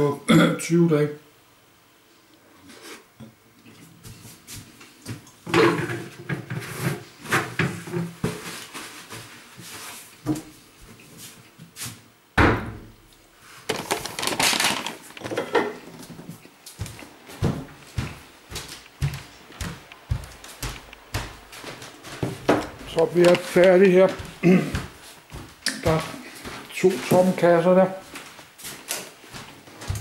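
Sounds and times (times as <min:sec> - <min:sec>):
rustling: 0:13.4 - 0:18.0, 0:19.2 - 0:25.5
objects knocking: 0:13.7 - 0:16.0.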